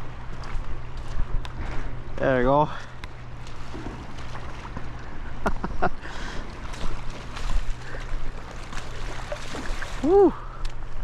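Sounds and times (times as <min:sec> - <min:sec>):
river water flowing: 0:02.8 - 0:11.0.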